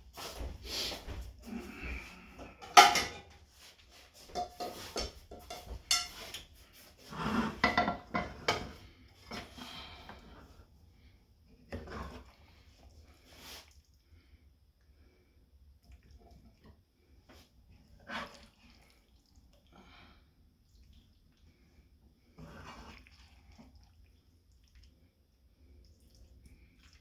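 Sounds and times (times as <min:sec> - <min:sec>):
utensil scraping and knocking on pan: 0:02.6 - 0:03.4, 0:04.3 - 0:06.5, 0:07.5 - 0:08.8.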